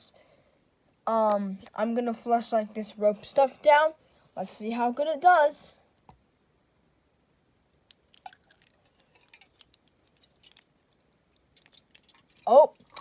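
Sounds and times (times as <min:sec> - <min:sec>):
wet squishing: 0:07.7 - 0:13.0.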